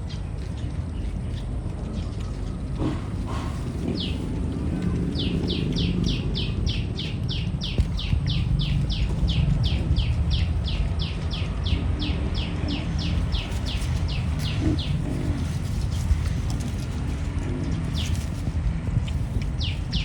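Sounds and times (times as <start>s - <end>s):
steady low rumble: 0.0s - 20.0s
bird chirping rapidly: 5.1s - 16.8s, 19.6s - 20.0s.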